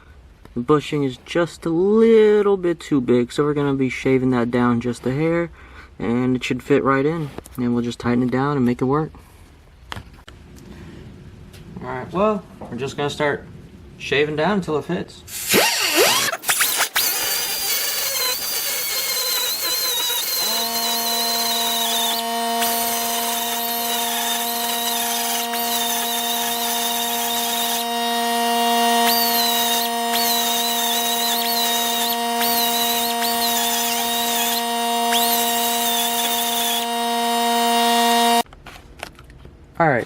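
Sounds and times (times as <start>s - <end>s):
power grinder whining: 15.3s - 38.5s.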